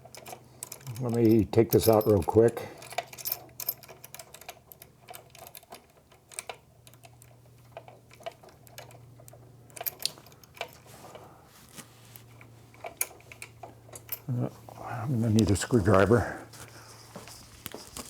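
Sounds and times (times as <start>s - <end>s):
steady low hum: 9.7s - 18.0s.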